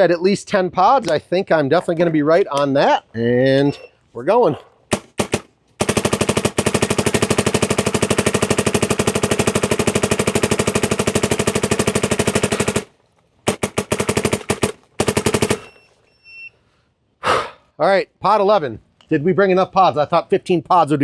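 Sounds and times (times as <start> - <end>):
paintball marker rapid firing: 4.9 - 12.9, 13.5 - 15.7.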